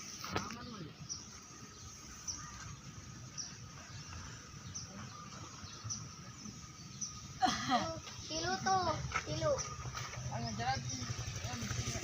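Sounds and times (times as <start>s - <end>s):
bird chirps: 0.0s - 8.8s
outdoor background noise: 0.0s - 12.0s.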